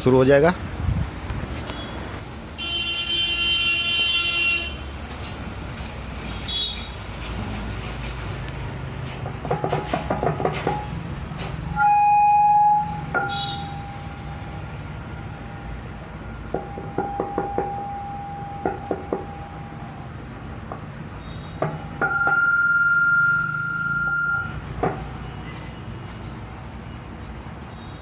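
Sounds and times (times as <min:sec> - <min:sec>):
acoustic feedback whistling: 0:11.7 - 0:15.3, 0:16.6 - 0:19.8, 0:21.2 - 0:24.6.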